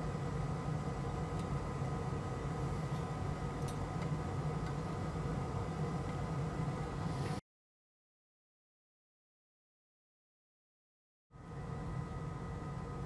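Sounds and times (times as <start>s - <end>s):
mechanical hum: 0.0s - 7.4s, 11.4s - 13.0s.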